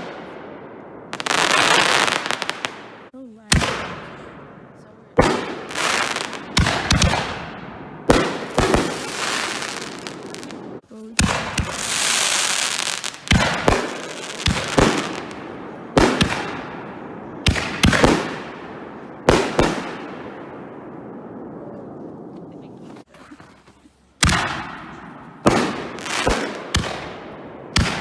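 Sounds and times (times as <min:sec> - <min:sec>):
fireworks bangs: 0:00.0 - 0:23.2, 0:24.1 - 0:28.0
high crackling hiss: 0:01.2 - 0:03.1, 0:08.5 - 0:11.0, 0:11.6 - 0:15.4.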